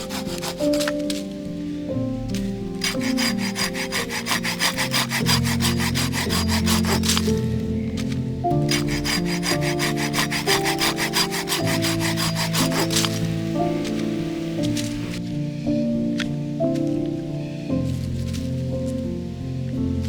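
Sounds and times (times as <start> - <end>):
hand saw cutting wood: 0.0 - 1.2, 2.8 - 7.4, 8.6 - 15.2
background music: 0.0 - 20.0.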